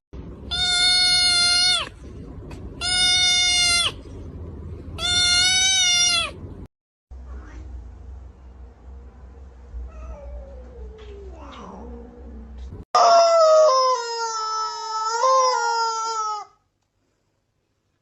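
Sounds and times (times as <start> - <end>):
cat meowing: 0.5 - 1.9, 2.8 - 4.0, 5.0 - 6.4.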